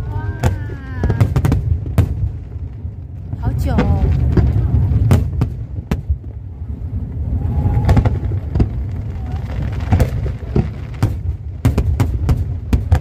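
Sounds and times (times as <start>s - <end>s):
fireworks bangs: 0.0s - 13.0s
steady low rumble: 0.0s - 13.0s.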